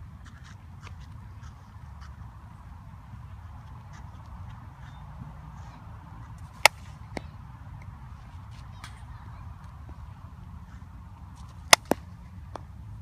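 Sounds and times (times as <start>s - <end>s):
bat striking ball: 6.4s - 7.4s, 11.6s - 12.6s.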